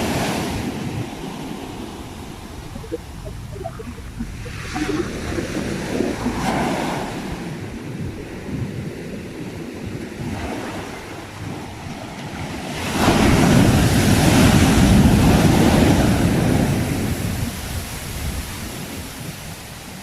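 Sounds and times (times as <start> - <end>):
sea waves breaking on shore: 0.0 - 20.0
wind rumble on microphone: 0.0 - 20.0.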